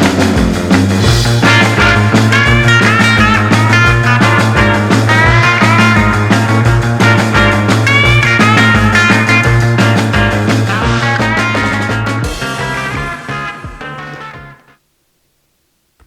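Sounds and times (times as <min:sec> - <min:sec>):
drum beat: 0:00.0 - 0:14.7
held bass: 0:00.0 - 0:14.8
rock music: 0:00.0 - 0:14.8
sliding high notes: 0:01.0 - 0:14.8.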